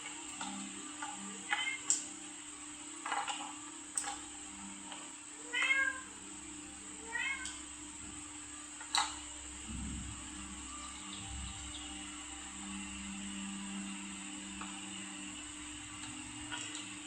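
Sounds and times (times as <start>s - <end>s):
cat meowing: 5.4s - 6.1s, 7.0s - 7.6s.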